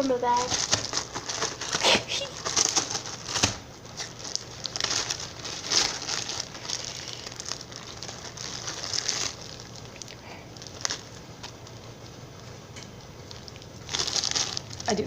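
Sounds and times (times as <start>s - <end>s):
slime squishing: 0.3s - 12.1s, 13.1s - 15.0s
slime crackling and popping: 0.4s - 12.1s, 13.0s - 15.0s.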